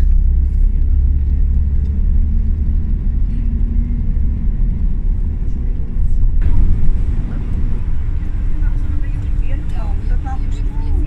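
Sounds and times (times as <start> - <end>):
bus engine and road rumble: 0.0 - 11.0.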